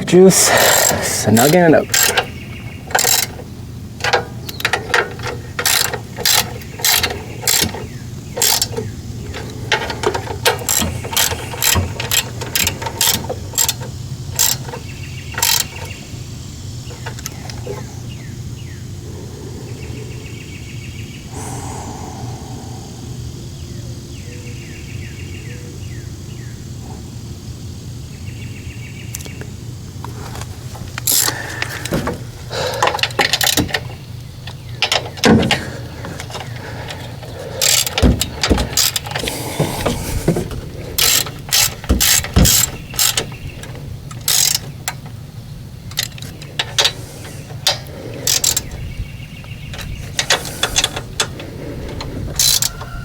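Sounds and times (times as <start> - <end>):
hand ratchet clicking: 0.4 - 2.3, 2.9 - 3.4, 4.0 - 14.8, 15.4 - 15.9, 31.0 - 33.8, 37.6 - 40.1, 41.0 - 43.3, 44.1 - 45.0, 45.9 - 48.7, 52.4 - 52.7
steady low hum: 5.5 - 44.1.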